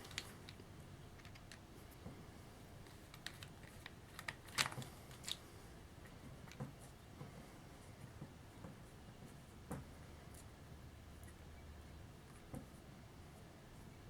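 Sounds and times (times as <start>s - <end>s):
faint clicks of small parts: 0.0s - 2.2s, 2.8s - 7.4s.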